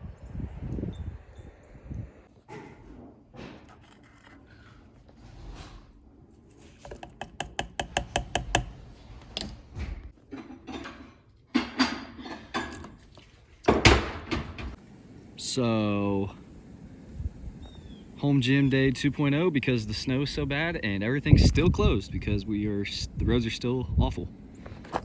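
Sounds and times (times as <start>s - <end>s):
handling clicks and knocks: 6.8s - 9.7s, 24.5s - 25.0s.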